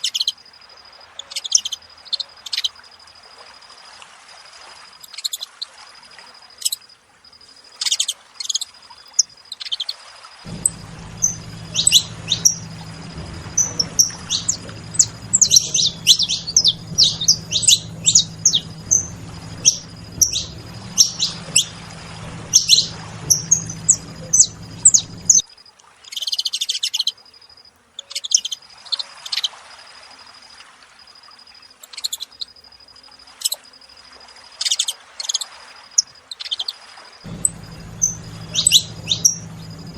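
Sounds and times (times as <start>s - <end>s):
finches chirping: 10.5s - 25.4s, 37.3s - 39.9s
high insect-like trill: 10.5s - 25.4s
low hum: 10.5s - 25.4s, 37.3s - 39.9s.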